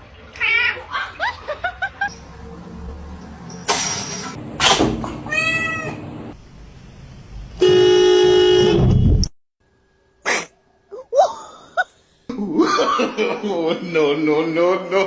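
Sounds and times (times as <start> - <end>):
cat meowing: 5.2 - 6.0.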